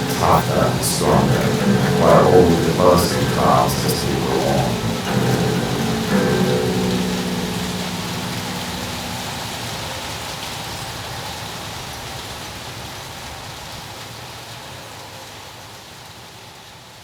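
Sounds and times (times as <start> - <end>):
held music notes: 0.0 - 10.5
steady rain hiss: 0.0 - 12.2.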